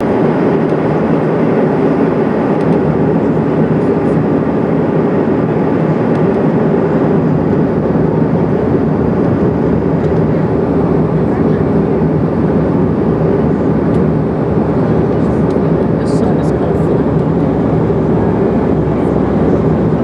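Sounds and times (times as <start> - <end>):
airliner cabin drone: 0.0 - 20.0.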